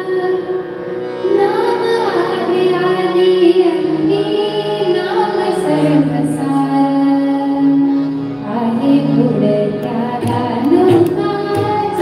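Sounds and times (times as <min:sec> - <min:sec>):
person singing devotional song: 0:00.0 - 0:12.0
regular percussion strikes: 0:10.2 - 0:12.0.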